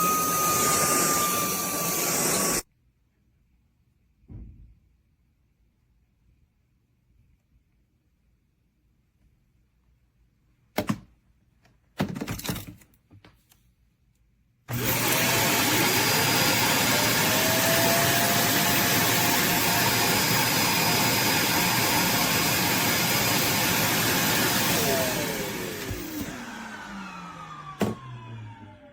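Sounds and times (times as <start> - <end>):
vacuum motor whine: 0.0 - 2.6, 14.7 - 28.9.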